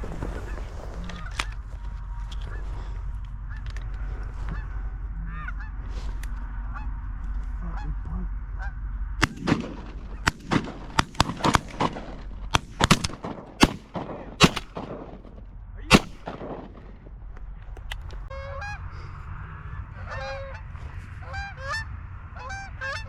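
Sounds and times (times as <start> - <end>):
geese honking: 0.0 - 17.0, 17.6 - 23.0
shotgun blasts: 9.2 - 18.1.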